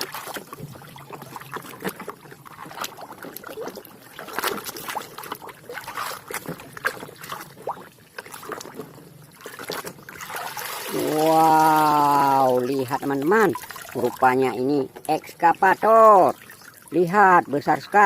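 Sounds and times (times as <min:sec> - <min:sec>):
knocks and scrapes of scrubbing: 0:00.0 - 0:11.1
water splashing and trickling: 0:00.0 - 0:18.0.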